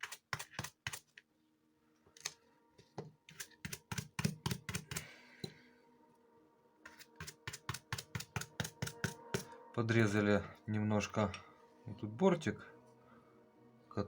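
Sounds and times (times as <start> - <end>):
hand tools clicking and tapping: 0.0 - 1.2, 2.2 - 5.6, 6.9 - 9.5.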